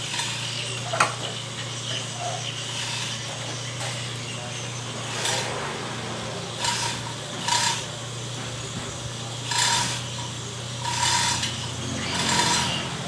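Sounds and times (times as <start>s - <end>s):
engine hoist metallic rasping: 0.0s - 13.0s.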